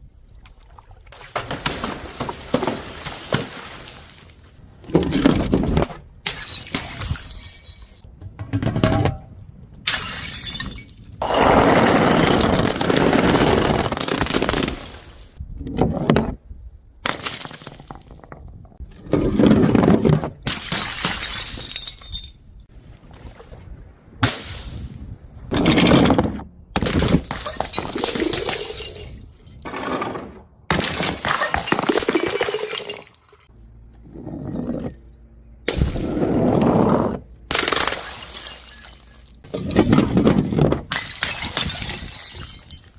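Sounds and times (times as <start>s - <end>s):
glass bottles breaking and crushing: 6.2s - 8.1s, 9.9s - 11.3s, 19.0s - 22.5s, 26.8s - 30.0s, 30.7s - 33.5s, 37.5s - 42.9s.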